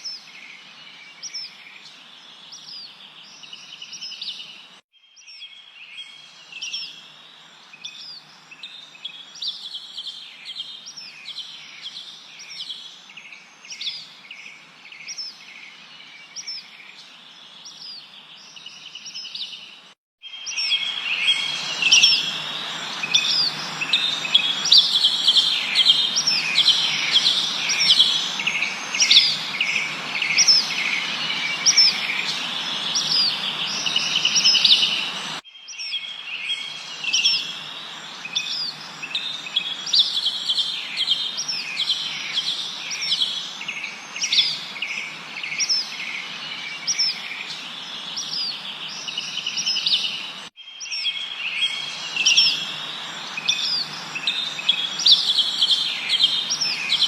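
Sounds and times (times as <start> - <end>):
birds chirping and singing: 7.8 - 57.0
steady background hiss: 20.5 - 35.4, 36.1 - 50.5, 51.2 - 57.0.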